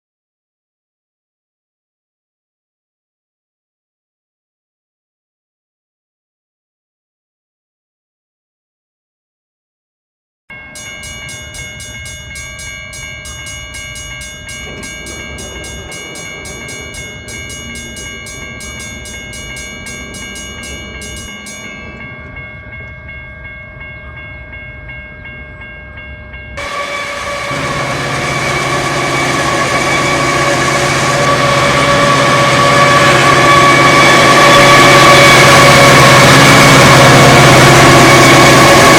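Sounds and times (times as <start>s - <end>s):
locomotive air horn: 26.6s - 38.9s.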